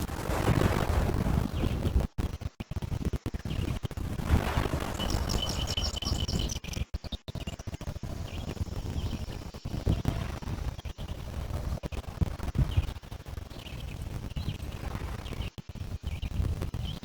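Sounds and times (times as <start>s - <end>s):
low microphone rumble: 3.6s - 6.6s
small bird trilling: 4.7s - 6.8s.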